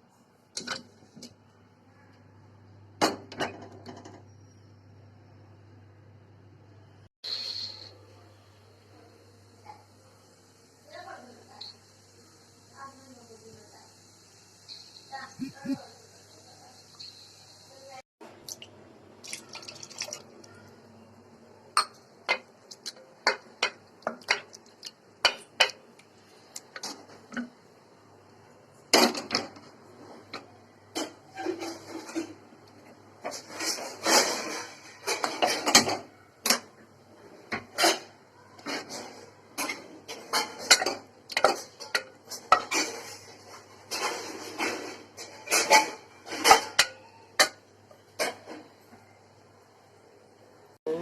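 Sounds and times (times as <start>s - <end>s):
metal utensils clinking on cookware: 37.5s - 47.6s.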